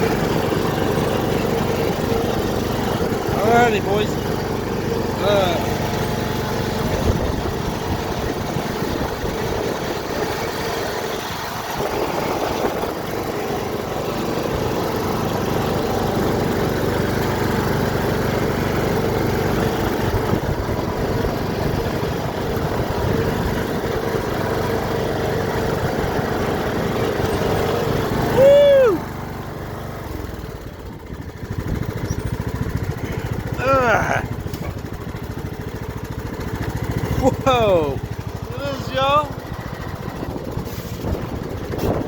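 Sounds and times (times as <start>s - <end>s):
riding lawn mower engine running: 0.0s - 42.0s.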